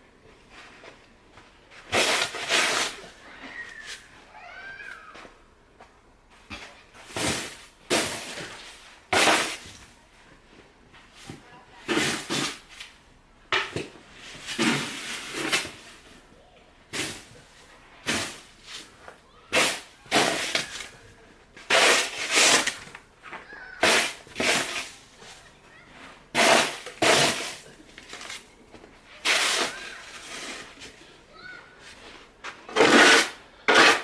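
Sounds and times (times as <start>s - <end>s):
footsteps crunching through snow: 19.7s - 33.1s.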